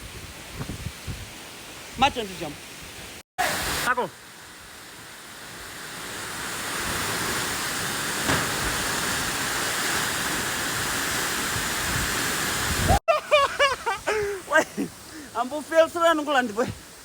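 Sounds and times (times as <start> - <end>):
waterfall rushing: 5.4 - 13.0.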